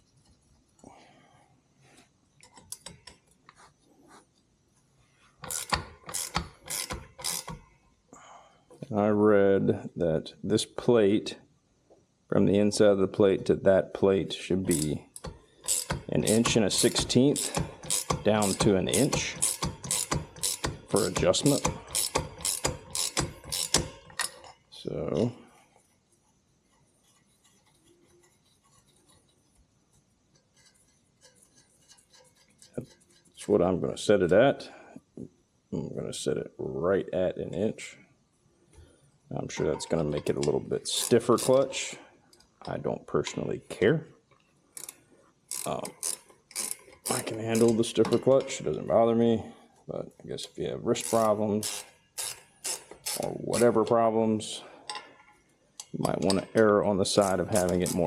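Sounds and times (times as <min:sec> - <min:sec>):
rasping ratchet strokes: 0:05.4 - 0:07.7, 0:14.7 - 0:24.6, 0:25.8 - 0:33.6, 0:40.2 - 0:41.8, 0:44.8 - 0:48.6, 0:51.0 - 0:54.0, 0:55.8 - 0:58.0.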